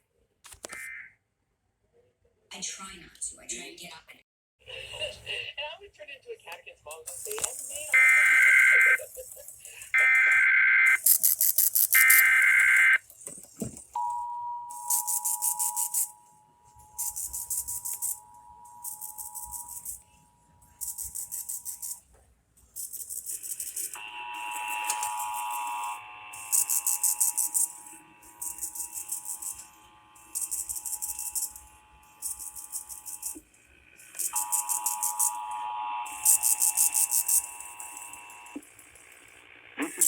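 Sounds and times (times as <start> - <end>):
raspy high-pitched buzzing bursts: 7.1 - 13.0, 14.7 - 22.0, 22.7 - 40.0
two-tone alert signal: 7.9 - 9.0, 11.8 - 13.0, 14.0 - 20.0.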